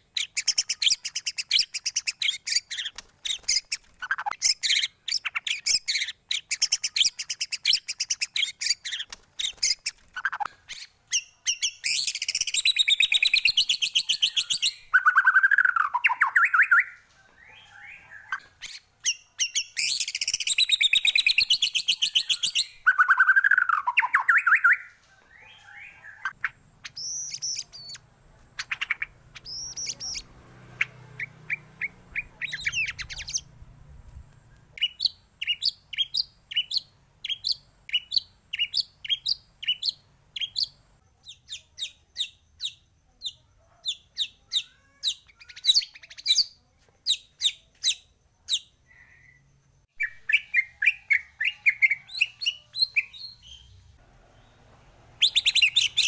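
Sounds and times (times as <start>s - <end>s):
bird trill: 0.0s - 33.6s, 34.5s - 54.6s, 55.2s - 56.0s
bird whistles and chirps: 0.2s - 28.0s, 28.6s - 30.3s, 45.1s - 53.8s, 55.2s - 56.0s.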